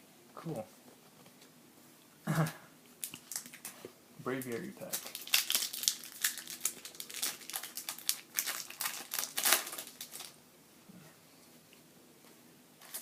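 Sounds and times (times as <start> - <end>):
foil wrapper crinkling: 3.0 - 3.8, 4.4 - 10.4.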